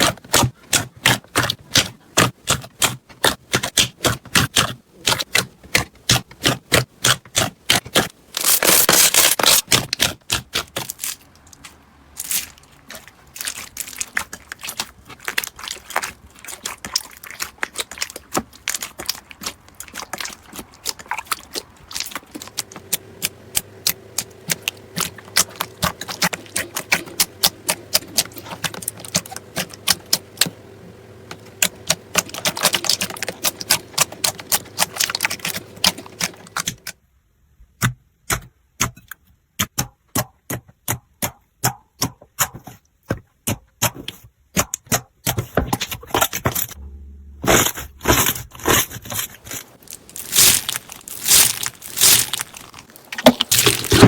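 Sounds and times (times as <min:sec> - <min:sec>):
faint steady hum: 0:46.8 - 0:54.0
slime clicking and popping: 0:49.8 - 0:54.0.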